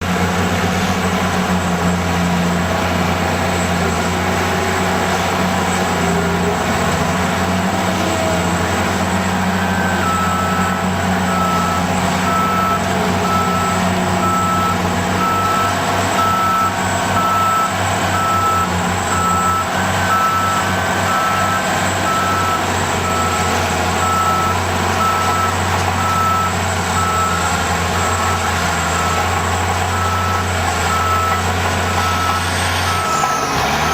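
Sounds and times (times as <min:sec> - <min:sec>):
bulldozer diesel engine running: 0:00.0 - 0:33.9
reverse alarm beeping: 0:09.4 - 0:33.9.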